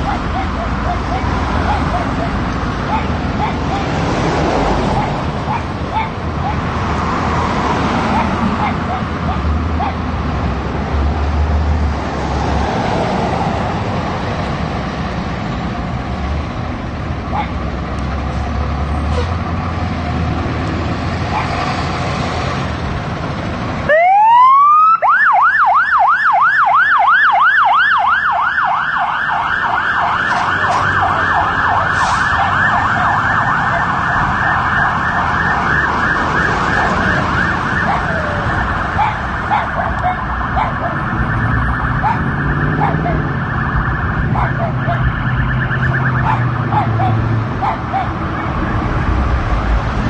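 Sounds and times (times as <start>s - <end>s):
siren wailing and yelping: 0.0s - 6.8s, 7.7s - 10.0s, 23.9s - 48.9s
low vehicle rumble: 25.4s - 50.0s.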